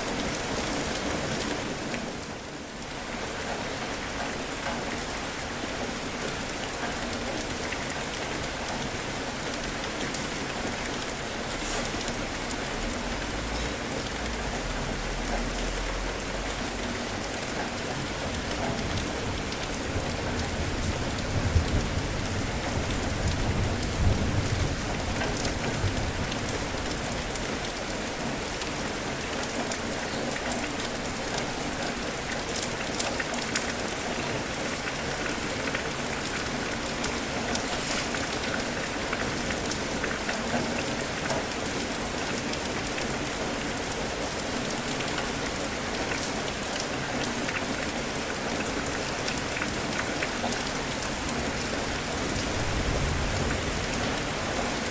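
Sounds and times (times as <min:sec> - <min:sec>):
steady rain falling: 0:00.0 - 0:54.9
low rumble of thunder: 0:18.2 - 0:27.6, 0:52.2 - 0:54.7.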